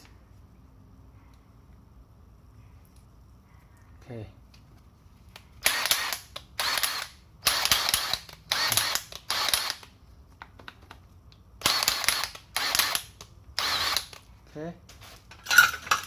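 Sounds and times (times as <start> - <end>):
impact wrench rattling: 5.7 - 9.9.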